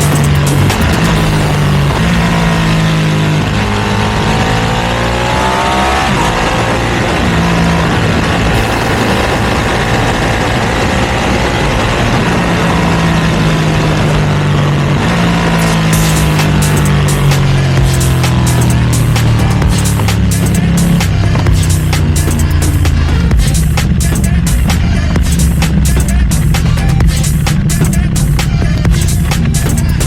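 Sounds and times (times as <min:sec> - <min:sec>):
motorcycle engine running: 0:00.0 - 0:30.0.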